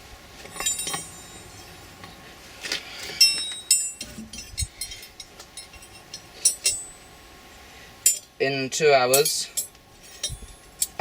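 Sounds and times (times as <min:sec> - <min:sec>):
metal hooks clinking: 0:00.5 - 0:01.8, 0:03.0 - 0:07.0, 0:09.1 - 0:11.0.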